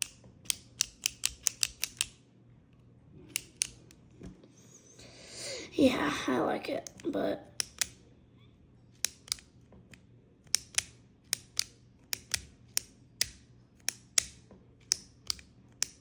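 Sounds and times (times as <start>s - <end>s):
click pen clicking: 0.0s - 2.2s, 3.3s - 4.0s, 7.6s - 8.0s, 9.0s - 16.0s.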